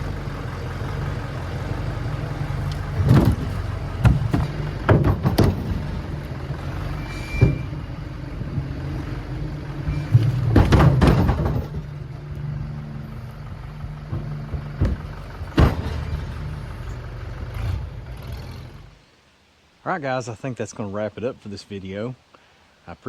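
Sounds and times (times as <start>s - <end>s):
engine running steadily: 0.0s - 19.0s
sharp knocks and thuds: 2.7s - 6.3s, 9.8s - 12.0s, 13.8s - 16.6s.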